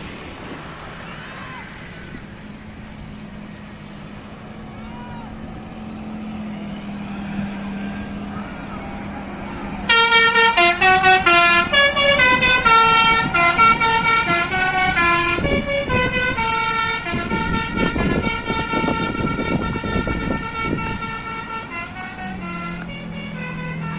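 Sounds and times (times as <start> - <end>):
musical bus horn tune: 9.8 - 23.9.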